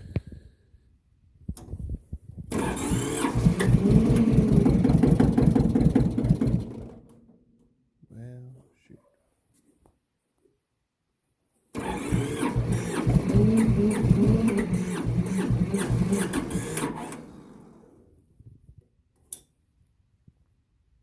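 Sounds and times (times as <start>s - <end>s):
starter cranking diesel engine: 2.5s - 7.1s, 11.8s - 18.1s.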